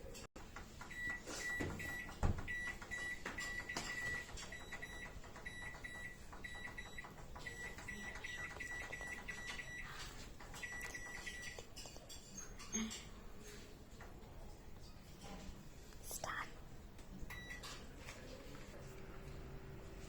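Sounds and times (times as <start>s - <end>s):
microwave control panel beeping: 0.8s - 11.6s, 17.3s - 17.7s.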